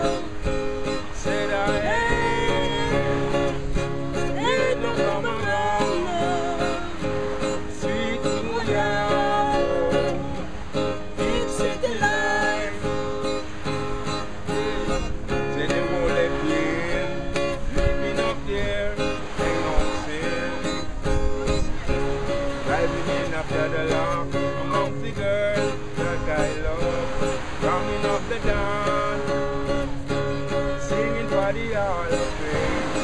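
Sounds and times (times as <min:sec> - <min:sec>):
person singing: 0:00.0 - 0:13.4
acoustic guitar: 0:00.0 - 0:33.0.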